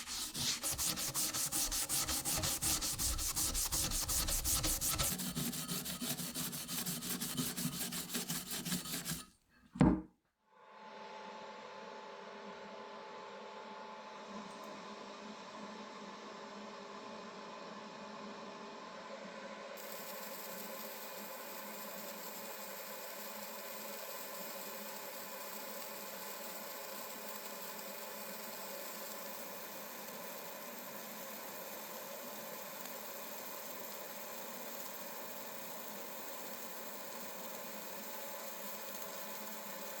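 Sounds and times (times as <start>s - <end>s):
power tool running with hiss: 0.0s - 9.1s, 19.8s - 40.0s.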